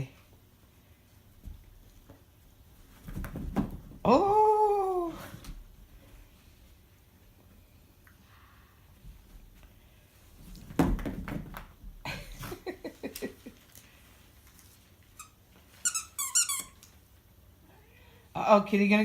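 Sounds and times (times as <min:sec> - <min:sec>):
dog squeaking: 0:15.2 - 0:16.8.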